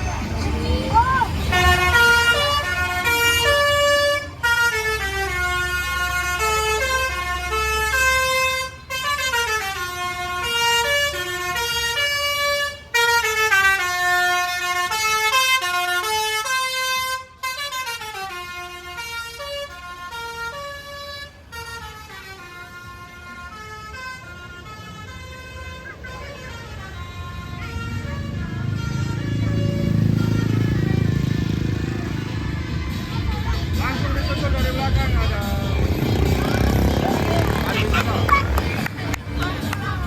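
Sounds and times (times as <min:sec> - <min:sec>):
multi-tone bus horn melody: 0:00.0 - 0:40.0.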